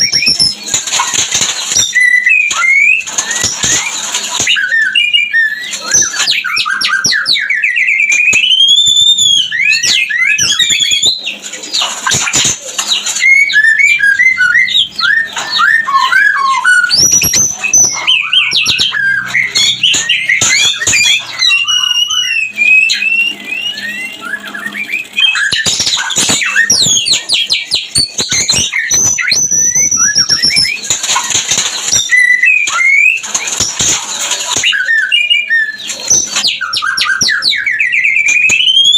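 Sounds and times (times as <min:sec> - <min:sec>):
songbird singing whistles: 0:00.0 - 0:38.9.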